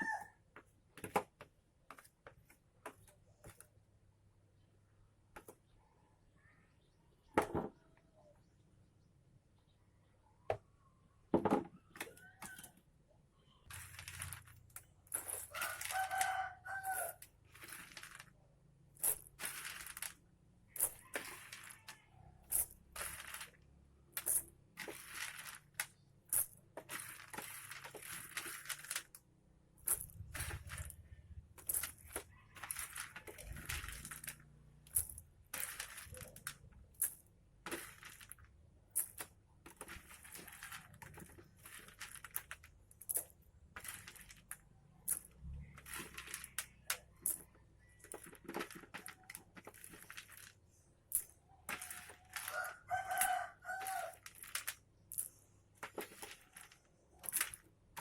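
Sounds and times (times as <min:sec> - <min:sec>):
dry rustling and crinkling: 0:13.6 - 0:58.0
sharp clicks and rattles: 0:29.8 - 0:58.0.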